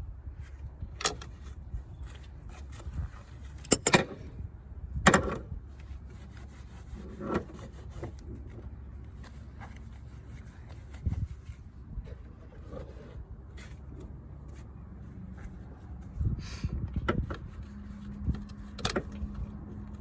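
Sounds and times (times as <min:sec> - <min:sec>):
socket and ratchet clinking: 0:03.6 - 0:04.2.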